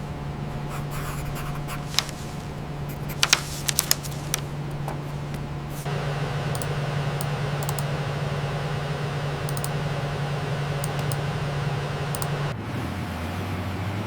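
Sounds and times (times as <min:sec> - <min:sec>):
machine hum: 0:00.0 - 0:12.6
light clicks: 0:03.2 - 0:08.0, 0:09.4 - 0:10.0, 0:10.7 - 0:11.3, 0:12.1 - 0:12.5.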